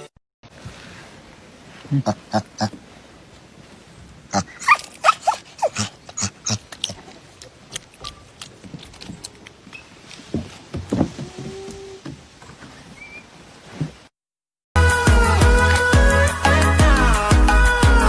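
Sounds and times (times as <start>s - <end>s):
dog vocalizing short calls: 0.6s - 7.2s.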